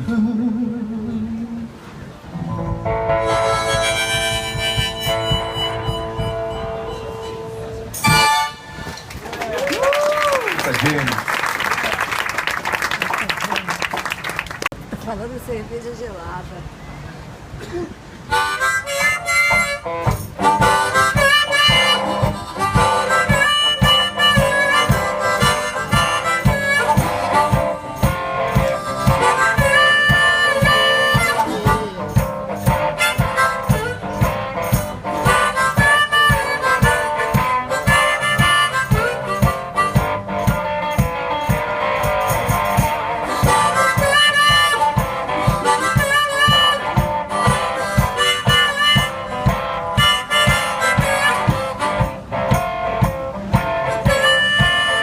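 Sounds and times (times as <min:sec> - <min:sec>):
guitar: 0:00.0 - 0:09.6, 0:14.9 - 0:55.0
steady low beat: 0:02.3 - 0:08.9, 0:18.3 - 0:55.0
harmonica lead: 0:02.5 - 0:09.0, 0:18.2 - 0:55.0.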